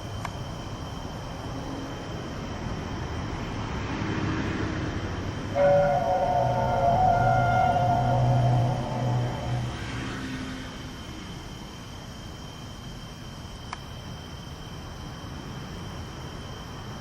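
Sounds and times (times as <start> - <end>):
faint high whine: 5.0 - 14.1
low droning tone: 5.5 - 10.8.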